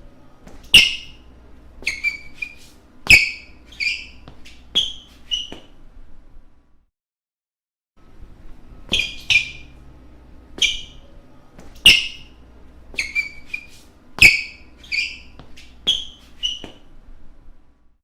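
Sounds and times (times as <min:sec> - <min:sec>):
shoe soles squeaking on floor: 0:00.4 - 0:05.8, 0:08.8 - 0:09.9, 0:10.5 - 0:17.0.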